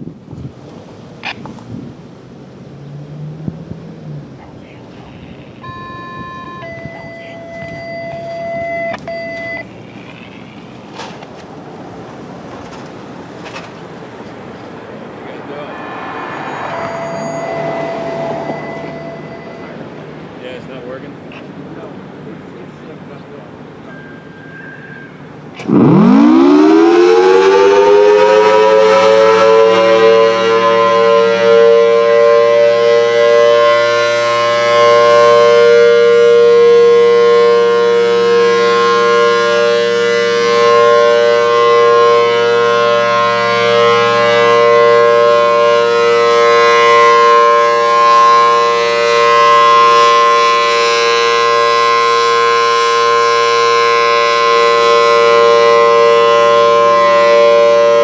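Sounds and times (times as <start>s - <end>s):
tornado siren two-tone chord: 5.6s - 9.7s, 14.9s - 20.4s, 23.9s - 58.0s.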